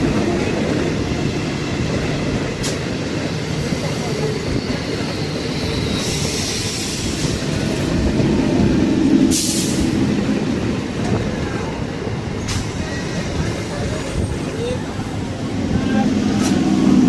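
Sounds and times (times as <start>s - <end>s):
train wheels rumbling on rail: 0.0s - 17.0s
sharp hiss burst: 9.2s - 10.0s.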